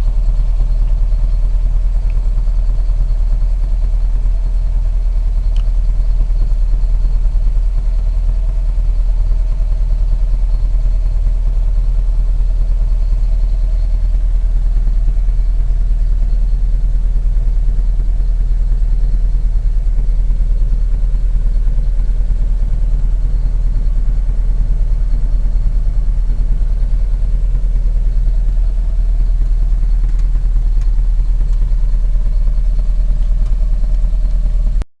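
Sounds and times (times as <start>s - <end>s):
car engine idling: 0.0s - 34.8s.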